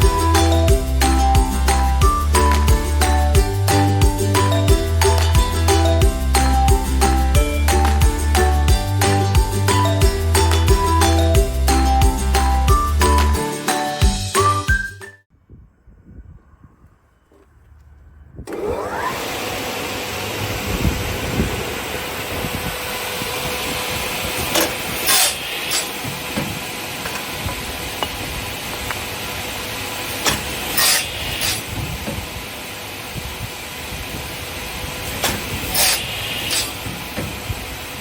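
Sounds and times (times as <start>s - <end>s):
saw motor running: 18.5s - 37.2s.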